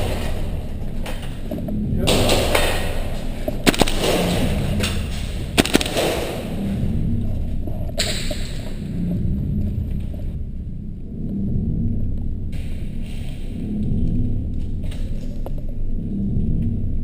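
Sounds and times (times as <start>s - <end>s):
low rumble: 0.0s - 17.0s
airsoft guns firing: 2.1s - 6.8s.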